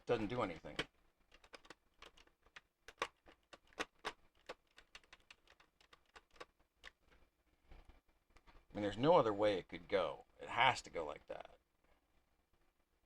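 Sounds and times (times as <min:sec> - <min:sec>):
puzzle pieces clicking: 0:00.7 - 0:07.0.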